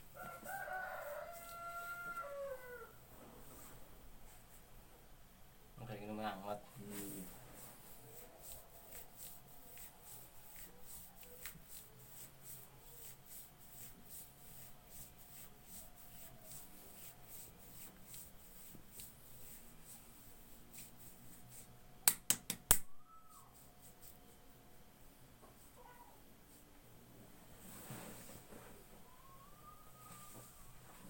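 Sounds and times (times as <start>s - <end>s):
hands rubbing skin: 6.9s - 24.4s.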